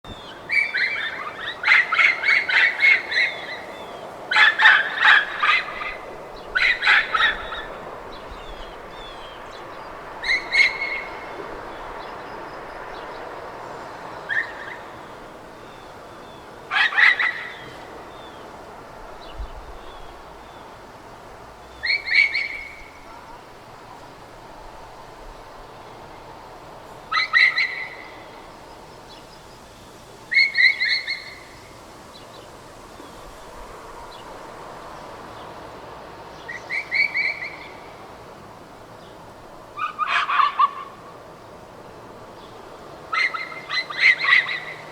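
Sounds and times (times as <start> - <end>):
birds chirping faintly: 0.0 - 44.9
dog barking: 23.0 - 24.1.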